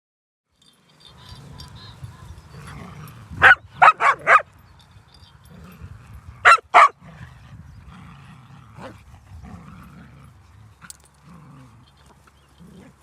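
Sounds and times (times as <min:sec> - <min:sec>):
dog barking: 0:03.4 - 0:04.5, 0:06.4 - 0:07.0.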